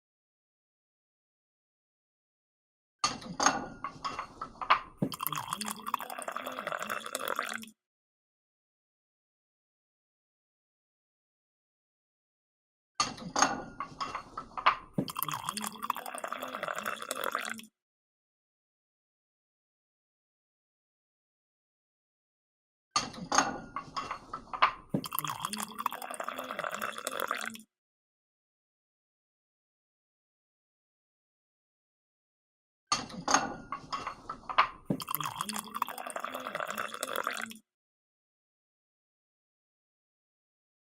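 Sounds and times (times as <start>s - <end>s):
coffee pouring into a cup: 5.0s - 7.7s, 14.9s - 17.7s, 24.9s - 27.6s, 34.8s - 37.6s.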